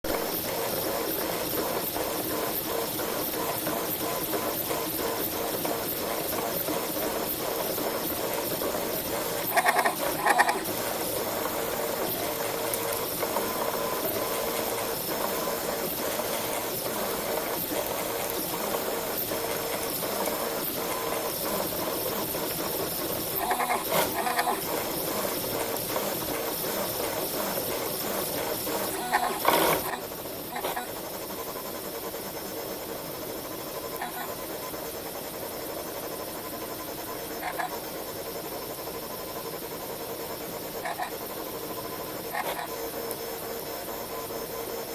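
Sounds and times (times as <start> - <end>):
machine drives humming and hissing: 0.1 - 44.9
stepper motors bleating whine: 5.4 - 25.8.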